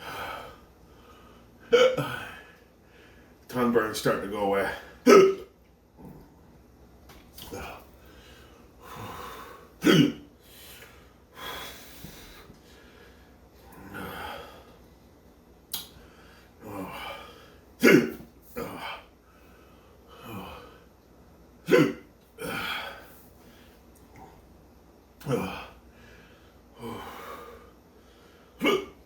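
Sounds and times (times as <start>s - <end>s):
man hiccuping: 1.7s - 2.4s, 5.0s - 5.6s, 9.8s - 10.3s, 17.8s - 18.9s, 21.6s - 22.9s, 25.2s - 25.7s, 28.6s - 29.0s
heavy breathing: 7.6s - 9.8s, 10.4s - 14.8s, 25.3s - 28.6s.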